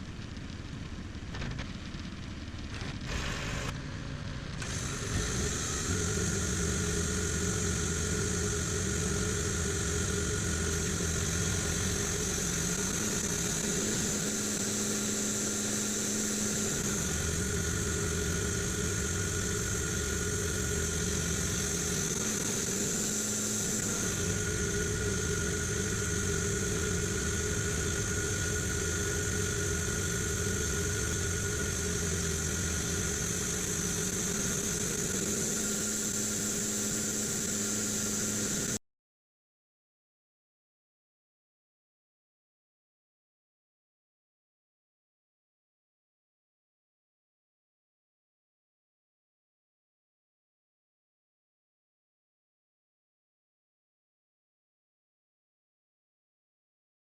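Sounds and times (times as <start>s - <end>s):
engine rumbling: 0.0s - 38.5s
thin high whine: 4.6s - 38.8s.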